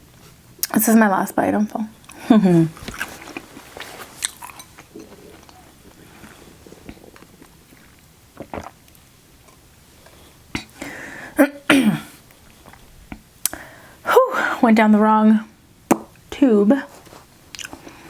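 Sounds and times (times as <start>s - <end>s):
person chewing food: 2.0s - 10.4s, 17.5s - 18.0s
person coughing: 11.4s - 12.2s.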